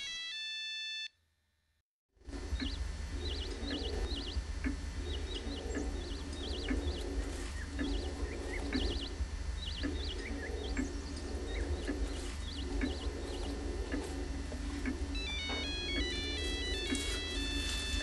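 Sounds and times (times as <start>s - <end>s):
low hum: 2.2s - 18.0s
bird chirp ringtone: 15.1s - 18.0s.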